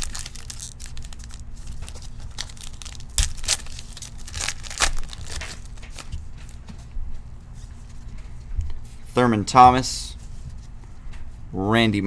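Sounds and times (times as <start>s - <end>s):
plastic wrapper tearing and crinkling: 0.0s - 6.6s
cards being handled: 0.0s - 6.7s.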